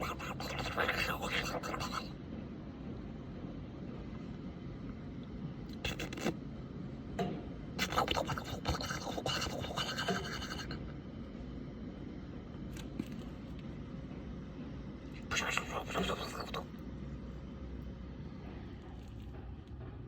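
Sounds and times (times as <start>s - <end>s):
scratchy rubbing noises: 7.8s - 10.8s.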